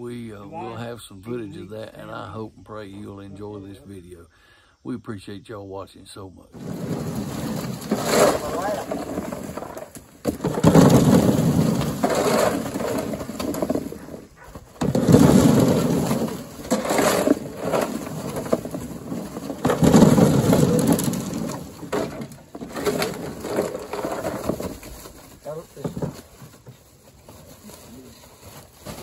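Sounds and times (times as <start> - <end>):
kernels and ears knocking: 6.6 - 26.8
corn rattling down wooden chute: 6.6 - 29.0.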